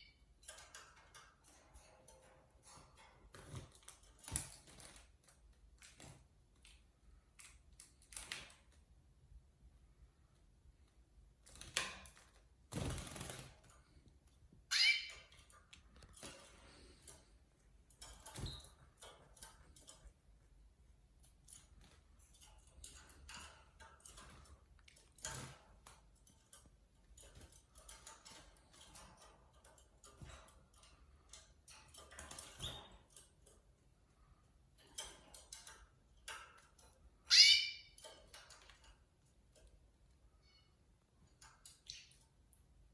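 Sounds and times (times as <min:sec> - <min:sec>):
canary chirps: 0:14.7 - 0:15.5, 0:37.2 - 0:38.1, 0:41.7 - 0:42.4.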